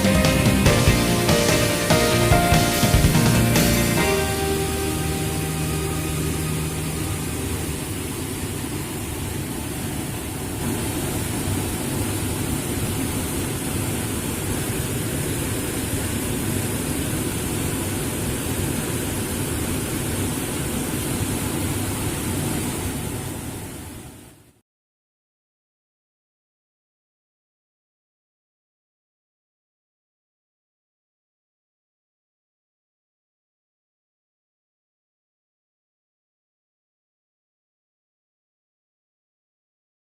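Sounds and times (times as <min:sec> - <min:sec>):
waterfall rushing water: 0:00.0 - 0:24.6.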